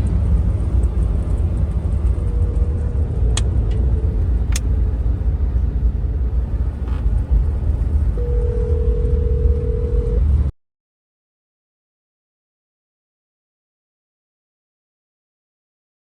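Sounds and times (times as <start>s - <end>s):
strong wind buffeting microphone: 0.0s - 8.2s.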